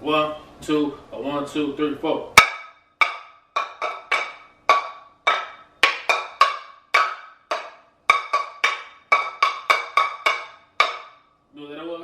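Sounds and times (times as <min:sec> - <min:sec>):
metal pots struck as drums: 0:02.4 - 0:11.2.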